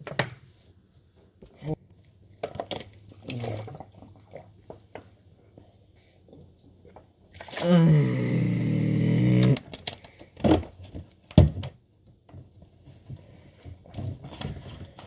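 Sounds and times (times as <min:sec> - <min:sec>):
person groaning: 0:07.6 - 0:09.6.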